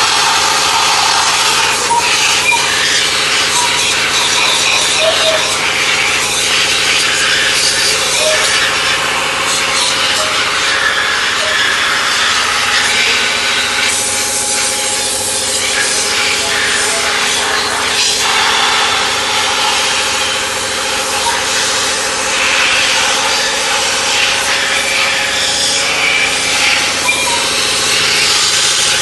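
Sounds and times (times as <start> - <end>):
power sander rubbing hiss: 0.0 - 29.0
sander motor hum: 0.0 - 29.0.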